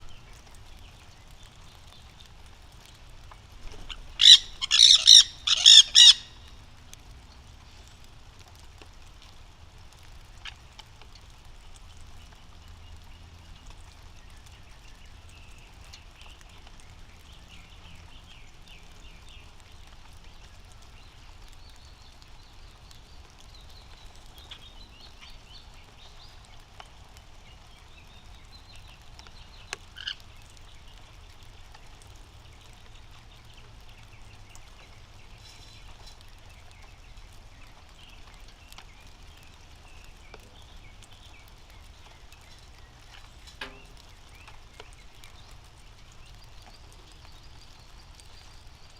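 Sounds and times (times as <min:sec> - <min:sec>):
parrots screeching: 0:03.8 - 0:06.5.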